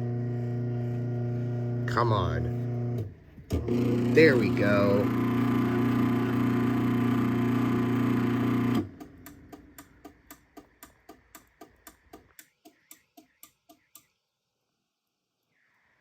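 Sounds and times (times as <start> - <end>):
garage door opener motor: 0.0 - 9.6.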